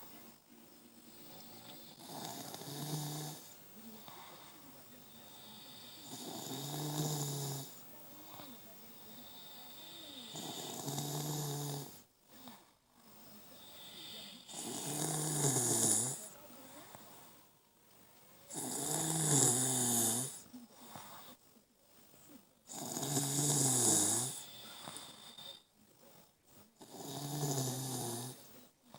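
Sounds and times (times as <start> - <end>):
quiet breathing: 0.0 - 28.9
person snoring: 1.0 - 7.8, 9.2 - 12.5, 13.2 - 16.4, 18.5 - 20.5, 22.7 - 25.6, 26.8 - 28.5.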